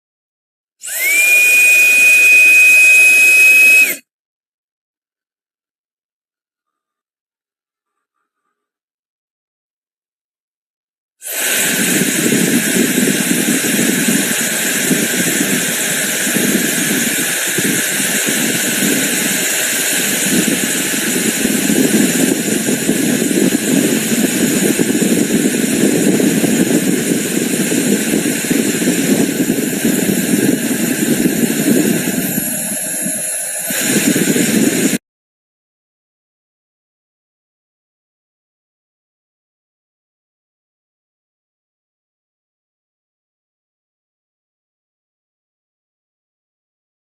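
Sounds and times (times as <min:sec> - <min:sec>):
hair dryer running: 0:00.8 - 0:04.0, 0:11.2 - 0:35.0.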